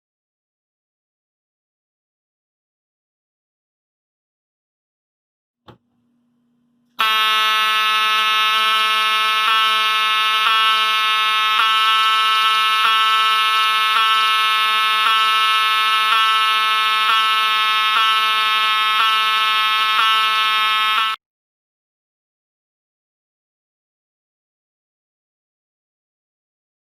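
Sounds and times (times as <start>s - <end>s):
fire alarm horn buzzing blare: 7.0s - 21.2s.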